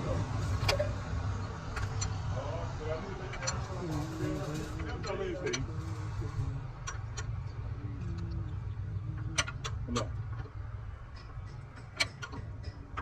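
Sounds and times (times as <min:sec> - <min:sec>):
low machine hum: 0:00.0 - 0:13.0
sharp metallic clicks and taps: 0:09.3 - 0:13.0.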